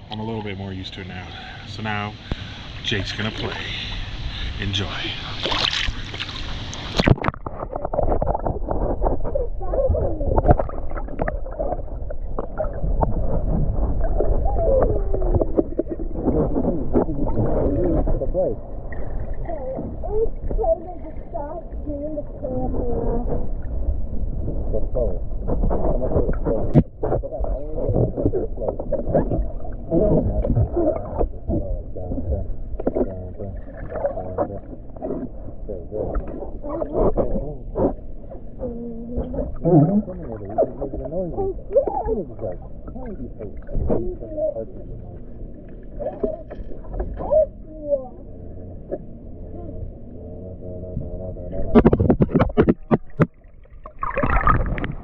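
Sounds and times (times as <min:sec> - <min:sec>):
low rumble: 0:00.0 - 0:55.0
warbling voice-like sounds: 0:04.8 - 0:23.6, 0:24.4 - 0:53.3, 0:53.9 - 0:55.0
splashing in a pool: 0:05.2 - 0:38.4, 0:39.2 - 0:44.4, 0:51.7 - 0:55.0
underwater gurgling and bubbling: 0:05.2 - 0:55.0.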